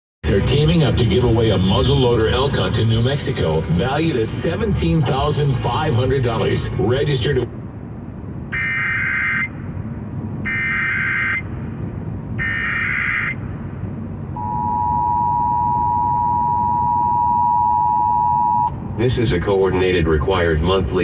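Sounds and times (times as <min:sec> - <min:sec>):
low road rumble: 0:00.2 - 0:21.0
two-tone attention signal: 0:14.4 - 0:18.7.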